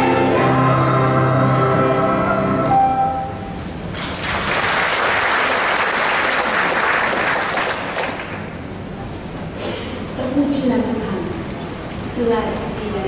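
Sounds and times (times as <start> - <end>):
children's choir singing: 0.0 - 3.1
congregation applauding: 3.9 - 8.7.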